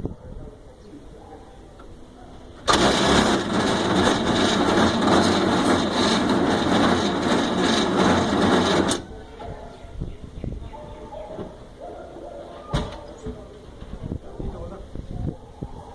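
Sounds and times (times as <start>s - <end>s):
van engine running: 2.6s - 9.0s.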